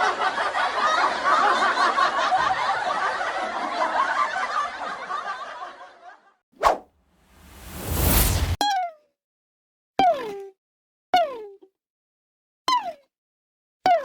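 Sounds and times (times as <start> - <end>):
crowd laughing: 0.0 - 6.1
rising whoosh: 6.6 - 8.6.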